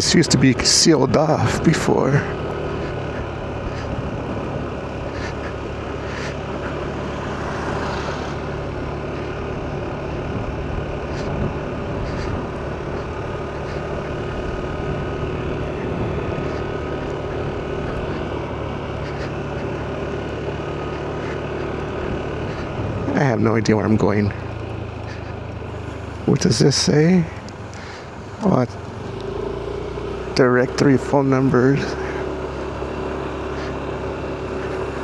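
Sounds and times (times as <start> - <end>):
car engine hum: 0.0 - 35.0
tyre and road noise: 0.0 - 35.0
faint ticks: 28.8 - 29.4.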